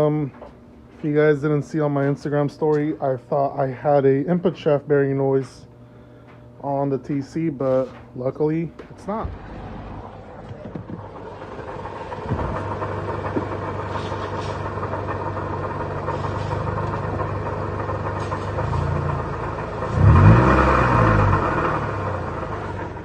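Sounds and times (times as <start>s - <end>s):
car engine starting and running: 8.4s - 23.0s
engine revving: 8.9s - 23.0s.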